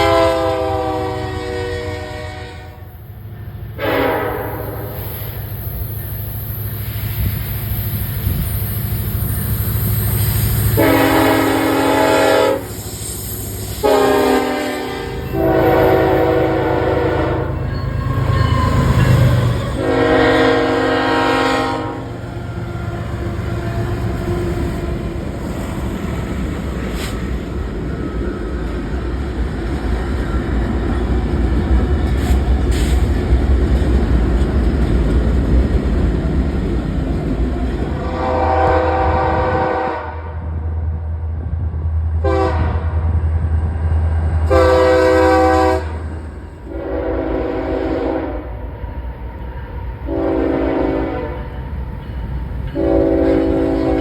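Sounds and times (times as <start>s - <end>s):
locomotive air horn blasts: 0.0s - 2.9s, 3.8s - 5.4s, 10.6s - 12.9s, 13.7s - 25.2s, 38.0s - 40.6s, 42.2s - 43.1s, 44.4s - 48.6s, 50.1s - 51.6s, 52.8s - 54.0s
train rumbling: 0.0s - 54.0s
train wheel clacks: 22.2s - 38.0s.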